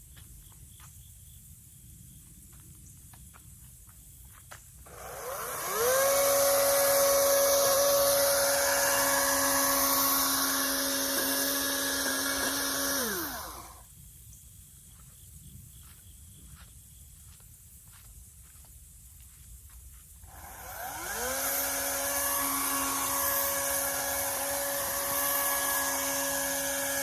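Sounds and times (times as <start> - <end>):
chainsaw motor spinning: 4.8 - 13.9, 20.2 - 27.0.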